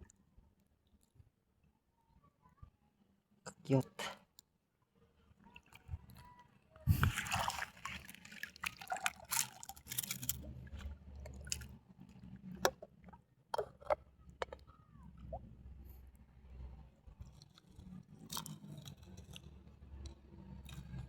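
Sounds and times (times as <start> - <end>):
water splashing and dripping: 6.9 - 10.4
loud splash: 7.1 - 9.6.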